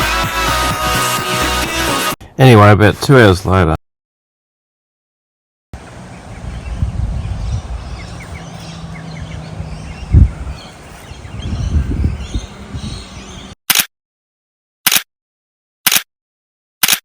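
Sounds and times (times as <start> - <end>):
small birds chirping: 5.8 - 13.6.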